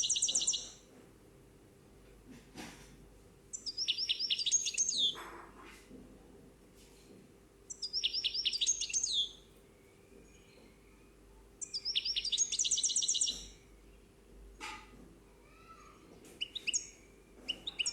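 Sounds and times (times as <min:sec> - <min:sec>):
songbird singing: 0:00.0 - 0:00.8, 0:03.5 - 0:05.2, 0:07.7 - 0:14.2, 0:16.4 - 0:17.9.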